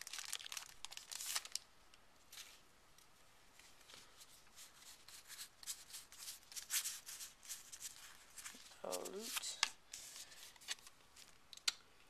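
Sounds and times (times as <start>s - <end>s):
cards rustling and flicking: 3.9s - 11.8s.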